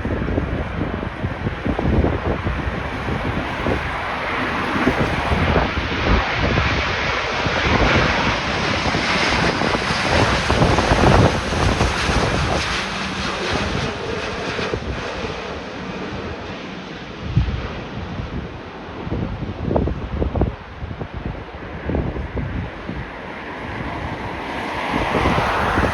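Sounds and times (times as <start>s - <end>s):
wind buffeting microphone: 0.0s - 15.4s, 17.2s - 25.9s
jet airliner noise: 0.6s - 16.1s, 22.7s - 25.9s.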